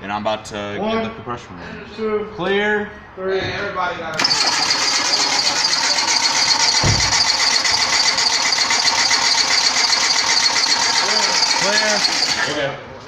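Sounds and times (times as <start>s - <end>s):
engine cranking on starter motor: 4.1s - 12.7s
low thump: 6.8s - 7.2s.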